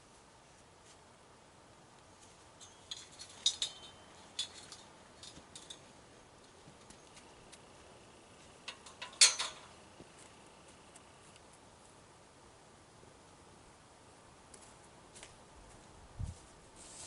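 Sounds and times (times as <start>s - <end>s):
light clicks and clinks: 2.6s - 7.3s, 8.6s - 9.8s.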